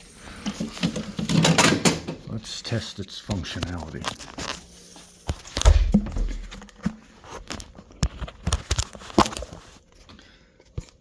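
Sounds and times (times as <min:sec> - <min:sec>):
heavy thump: 0:05.6 - 0:06.6.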